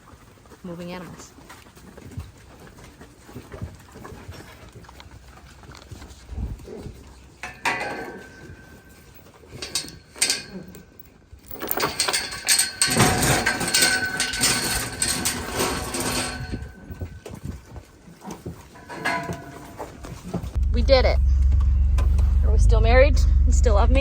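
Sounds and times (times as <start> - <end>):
metal gates clanking and rattling: 7.0 - 17.3, 18.2 - 20.6.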